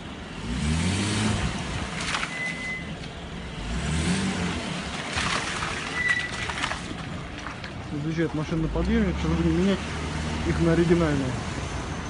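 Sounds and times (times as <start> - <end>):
car engine pulling: 0.0 - 12.0
high-pitched brake squeal: 2.3 - 2.9.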